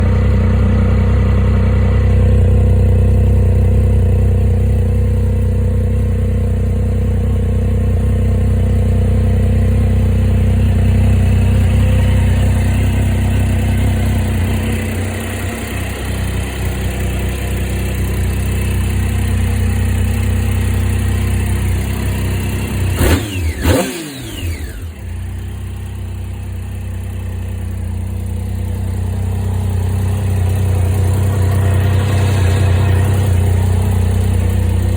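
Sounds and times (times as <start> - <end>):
motorcycle engine idling: 0.0 - 34.9
engine throttle blips: 9.4 - 34.9.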